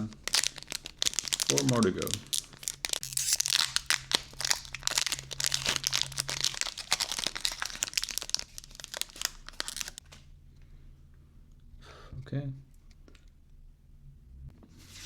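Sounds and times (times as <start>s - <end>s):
foil wrapper crinkling: 0.0s - 10.2s.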